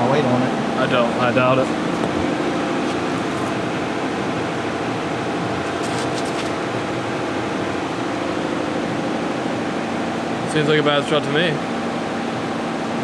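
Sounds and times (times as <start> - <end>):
fan running: 0.0 - 13.0.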